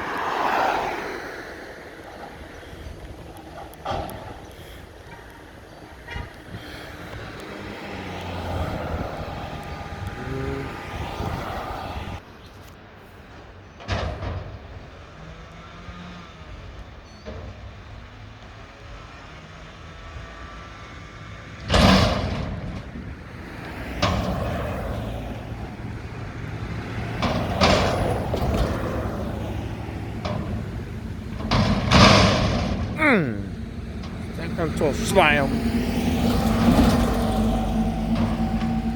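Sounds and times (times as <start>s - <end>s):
garbage truck diesel engine running: 25.5s - 38.9s.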